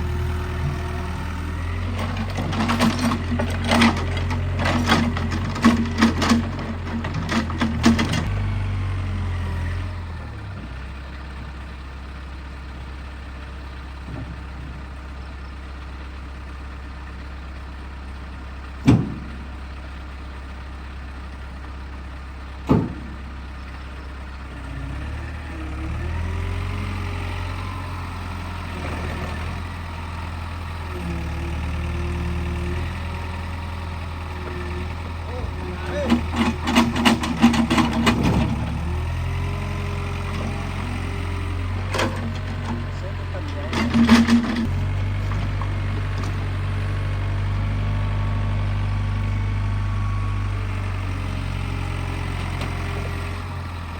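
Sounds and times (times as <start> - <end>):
excavator diesel engine running: 0.0 - 53.9
sharp loud knocks: 18.8 - 19.4, 22.6 - 23.2.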